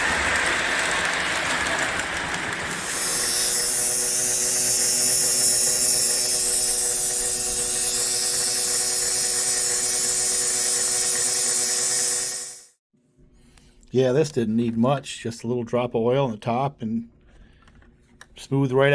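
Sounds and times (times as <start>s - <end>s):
toy train motor whining: 2.6s - 12.8s.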